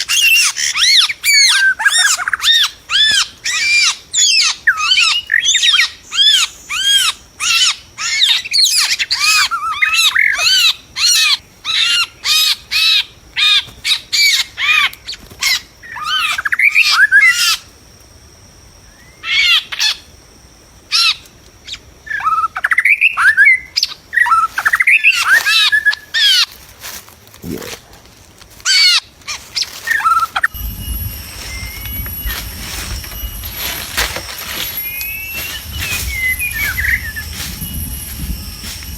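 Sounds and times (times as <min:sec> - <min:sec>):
low rumble: 0:30.5 - 0:38.9
bird whistling short notes: 0:31.5 - 0:38.0.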